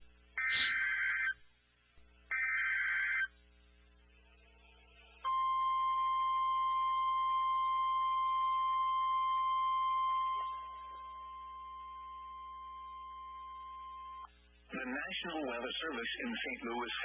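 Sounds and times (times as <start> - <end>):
steady high attention tone: 0.4 - 0.9
buzzy digital data burst: 0.4 - 1.2.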